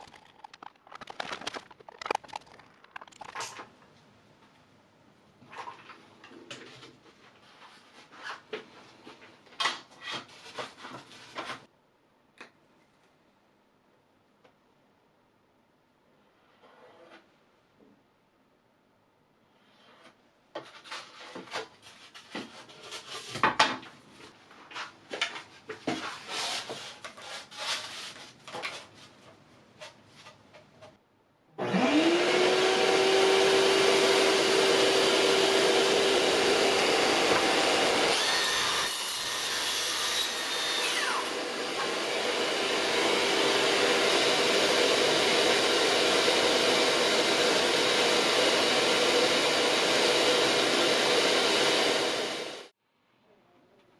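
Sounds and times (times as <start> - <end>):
power tool motor whining: 31.6 - 52.6.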